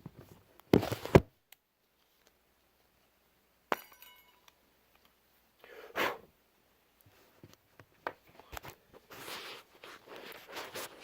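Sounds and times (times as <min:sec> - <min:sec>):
soft rustle: 0:01.8 - 0:03.1, 0:08.2 - 0:11.0
metallic clink ringing: 0:03.7 - 0:04.6.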